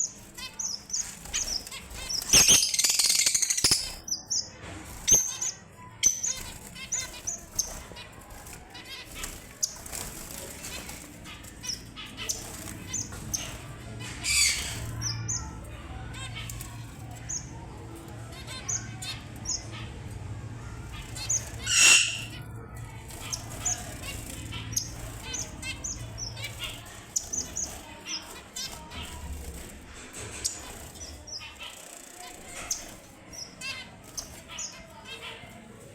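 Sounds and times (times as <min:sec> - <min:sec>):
wings fluttering: 0:00.0 - 0:04.0, 0:04.6 - 0:15.4, 0:20.8 - 0:35.3
finches chirping: 0:00.0 - 0:09.8, 0:10.5 - 0:17.6, 0:20.9 - 0:22.5, 0:23.1 - 0:29.4.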